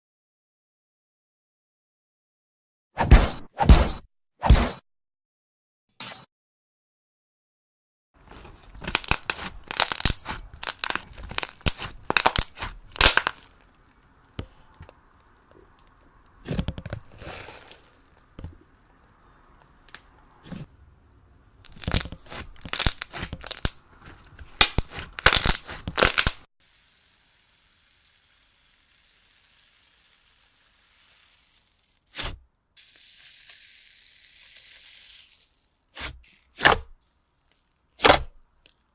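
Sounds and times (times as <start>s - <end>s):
slime crackling and tearing: 8.3s - 16.4s, 21.6s - 32.1s
faint hiss: 26.6s - 32.0s.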